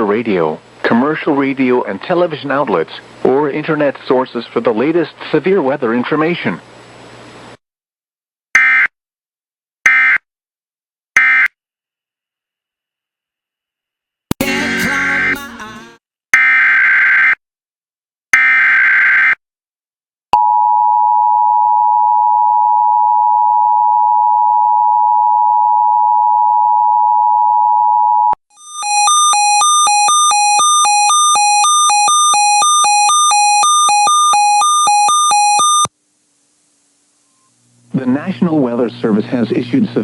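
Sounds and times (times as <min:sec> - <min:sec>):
warbling electronic alert tone: 0:28.6 - 0:35.9.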